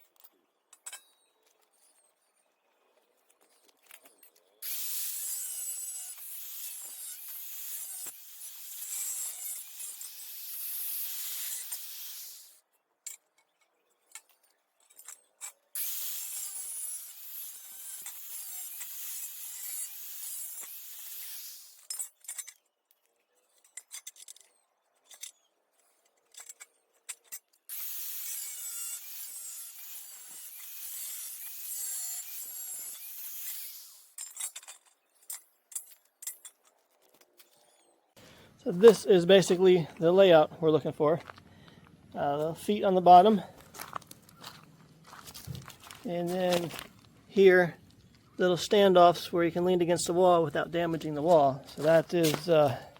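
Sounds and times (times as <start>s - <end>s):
metal pieces clinking: 34.2s - 37.9s.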